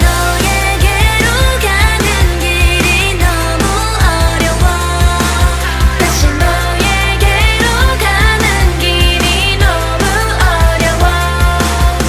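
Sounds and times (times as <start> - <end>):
pop song with singing: 0.0 - 12.0
steady beat and bass: 0.0 - 12.0.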